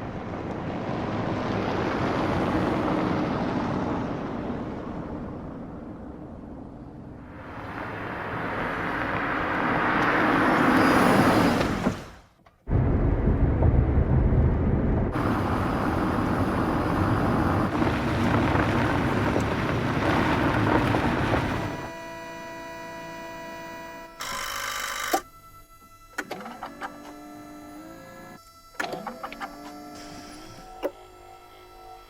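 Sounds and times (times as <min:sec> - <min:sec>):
car driving noise: 0:00.0 - 0:24.2
electric whine: 0:12.7 - 0:32.0.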